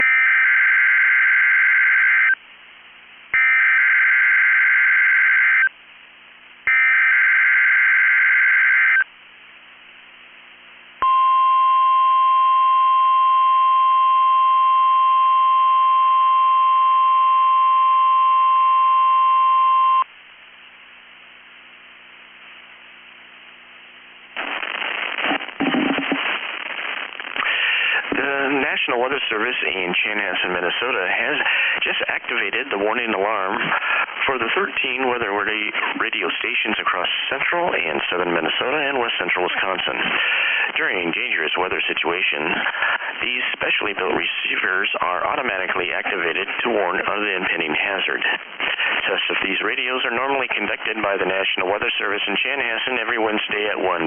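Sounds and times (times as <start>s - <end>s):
steady warning alarm tone: 3.4s - 5.7s
person speaking announcement: 28.1s - 40.1s, 40.7s - 42.6s, 43.2s - 48.4s, 49.0s - 54.0s.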